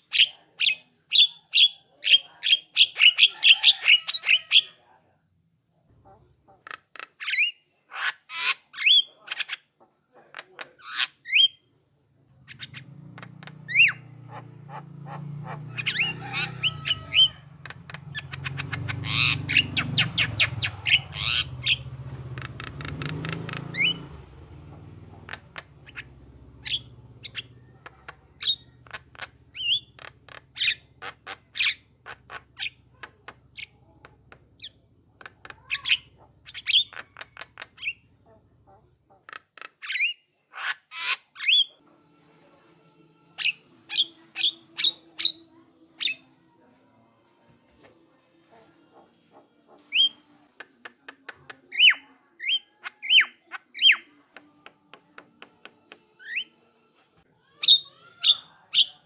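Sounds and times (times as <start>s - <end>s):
myna calling: 0.0s - 4.8s, 12.3s - 41.8s, 47.8s - 54.2s.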